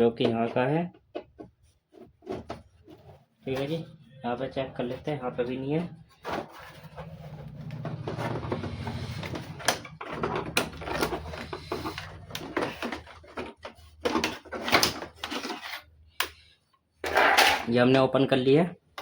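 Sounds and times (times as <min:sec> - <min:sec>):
plastic cover clicks and rattles: 0:07.7 - 0:15.6.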